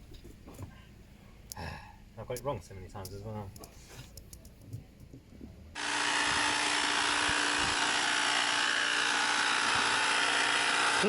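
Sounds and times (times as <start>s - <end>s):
inflator motor hum: 5.8s - 11.0s.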